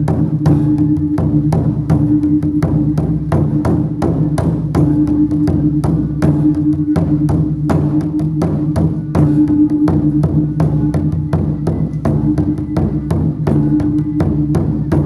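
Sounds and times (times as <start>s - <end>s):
gong and drum percussion strikes: 0.0s - 15.0s
low ringing tone: 4.8s - 15.0s.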